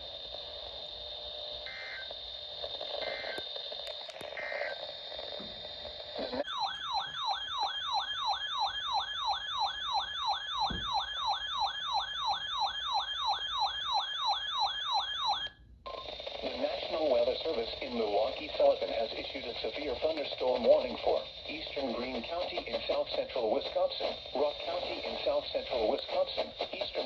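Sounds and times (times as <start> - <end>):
electronic siren-like alert tone: 6.4 - 15.5.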